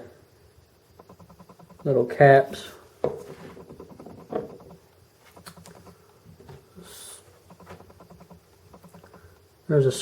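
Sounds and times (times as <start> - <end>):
small parts clicking and tapping: 1.0 - 2.2, 3.0 - 6.0, 7.4 - 9.5.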